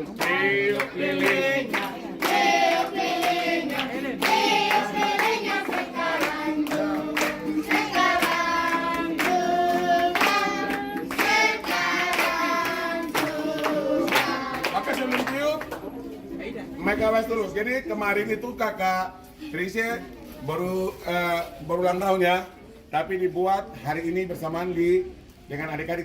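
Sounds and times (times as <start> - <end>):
people singing a celebration song: 0.0 - 16.0
people clapping: 0.0 - 16.2.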